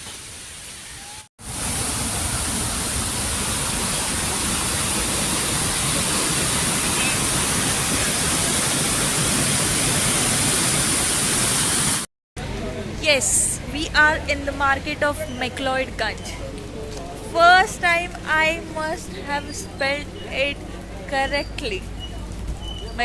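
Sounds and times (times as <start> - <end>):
rush of falling water: 0.0 - 12.1.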